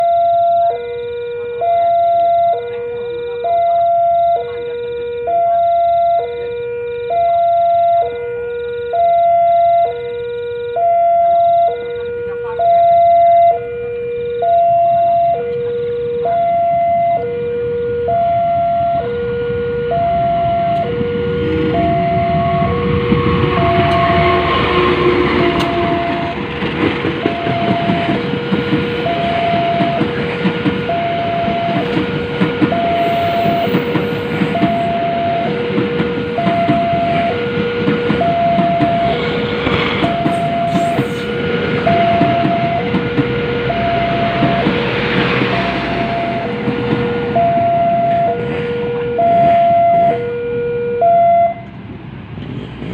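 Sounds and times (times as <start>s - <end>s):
two-tone crossing alarm: 0.0s - 51.8s
train wheels clattering: 21.6s - 48.8s.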